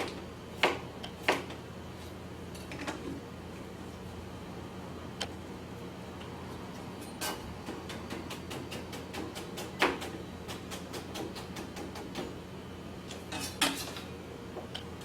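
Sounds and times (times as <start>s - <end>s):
knife chopping on cutting board: 0.0s - 1.6s.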